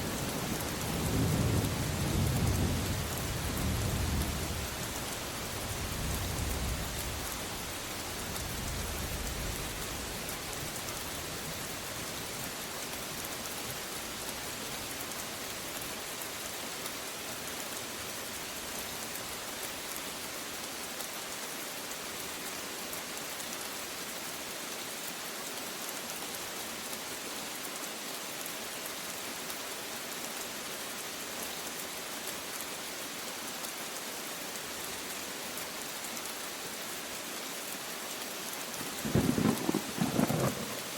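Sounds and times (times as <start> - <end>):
steady rain falling: 0.0 - 40.9
low rumble of thunder: 0.2 - 4.8, 38.8 - 40.9.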